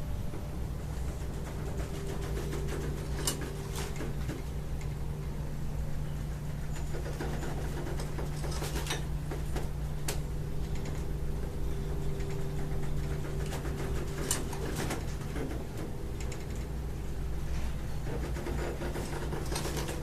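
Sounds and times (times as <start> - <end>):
low hum of ship: 0.0 - 20.0
long drawn-out creak: 11.7 - 20.0.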